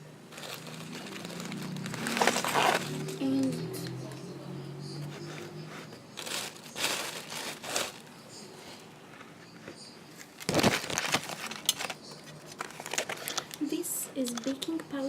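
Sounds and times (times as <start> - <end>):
packet crinkling: 0.3 - 4.0, 6.1 - 8.2, 10.2 - 13.6.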